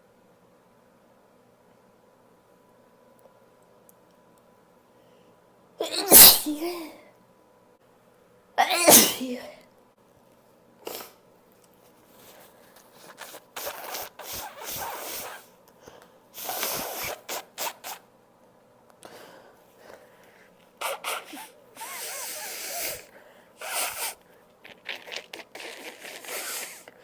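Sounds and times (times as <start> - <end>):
person sneezing: 5.8 - 7.0, 8.6 - 9.6, 10.9 - 11.2, 13.0 - 15.5, 16.4 - 18.0, 20.8 - 27.0
breathy noises: 19.0 - 27.0.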